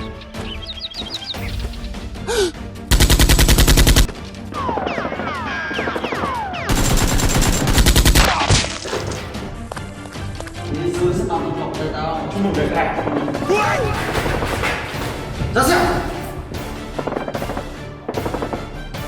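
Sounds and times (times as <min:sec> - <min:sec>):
automatic gunfire: 0:02.9 - 0:04.1, 0:04.9 - 0:08.3, 0:17.0 - 0:18.8.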